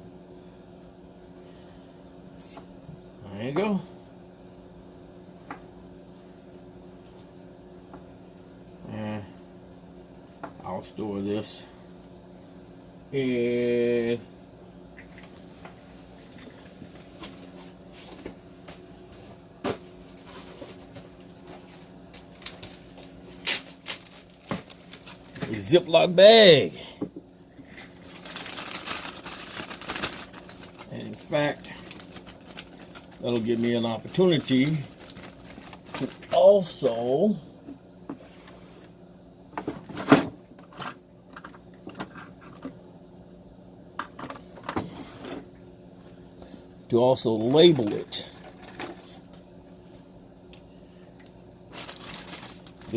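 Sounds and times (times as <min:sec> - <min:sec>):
steady low hum: 0:00.0 - 0:52.9
plastic bag rustling: 0:19.0 - 0:26.2, 0:27.5 - 0:37.0, 0:47.8 - 0:49.4, 0:51.7 - 0:52.9.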